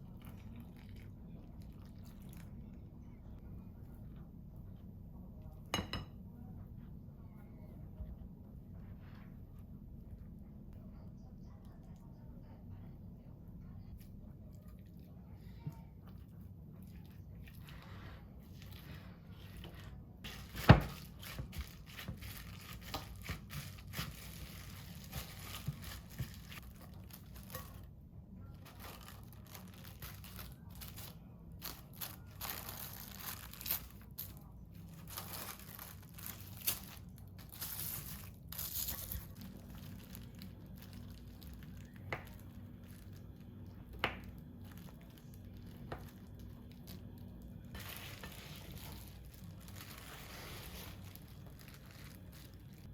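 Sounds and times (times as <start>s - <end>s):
crinkling and rustling: 16.1s - 52.9s.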